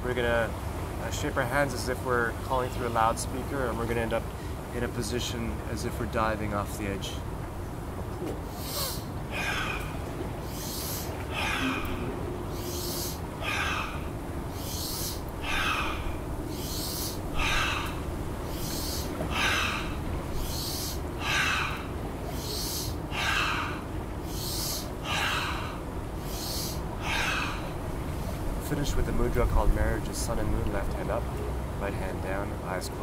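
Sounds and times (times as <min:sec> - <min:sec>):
person breathing forcefully: 0:08.4 - 0:27.9.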